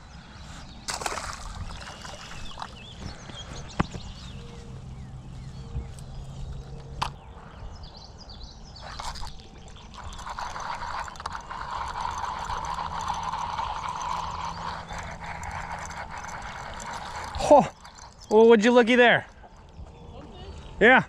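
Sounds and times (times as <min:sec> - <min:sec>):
fishing reel clicking whirr: 0:08.8 - 0:18.4.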